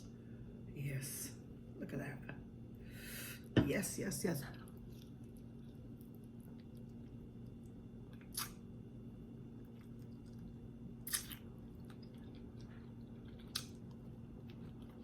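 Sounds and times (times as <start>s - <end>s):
steady low hum: 0.0s - 15.0s
person chewing food: 4.6s - 8.6s, 9.5s - 15.0s.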